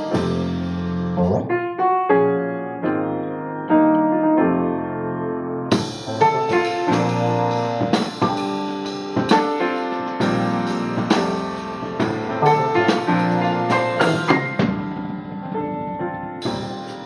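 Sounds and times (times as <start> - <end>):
drum kit with cymbals: 0.0 - 1.1, 5.7 - 15.1, 16.4 - 17.0
piano chords: 0.0 - 17.0.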